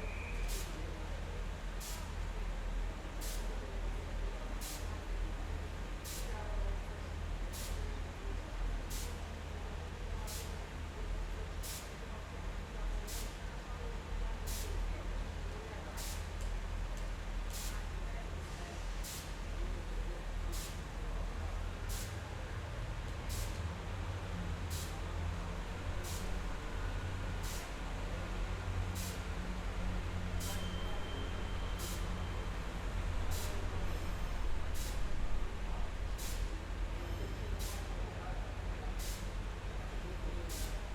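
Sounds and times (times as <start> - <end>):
short hiss of air: 0.4 - 0.8, 3.2 - 3.5, 26.0 - 26.5, 27.4 - 27.8, 29.0 - 29.3, 31.3 - 32.2, 33.3 - 35.4, 36.2 - 36.5, 37.6 - 37.9, 39.0 - 39.4, 40.5 - 40.8.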